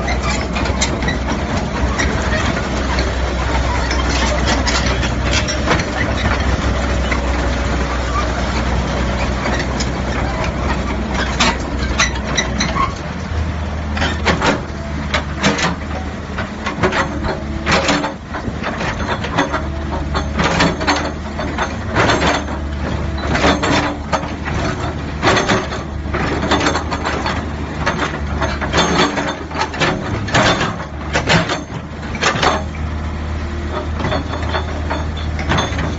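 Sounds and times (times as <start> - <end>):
metallic clanks and knocks: 0.0 - 13.1, 13.9 - 32.9, 33.7 - 35.9
excavator diesel engine running: 0.0 - 35.9.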